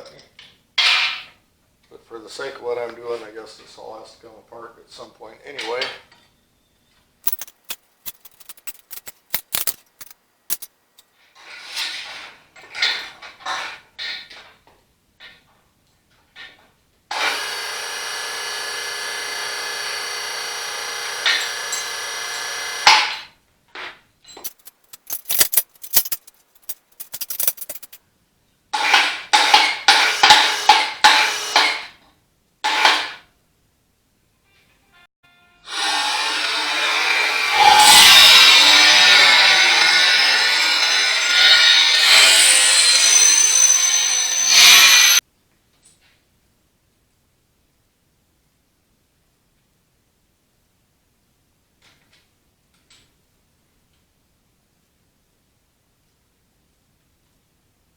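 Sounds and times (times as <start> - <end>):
metal clicks: 7.3 - 11.0, 24.4 - 28.0
power tool running: 17.1 - 23.1, 35.7 - 45.2.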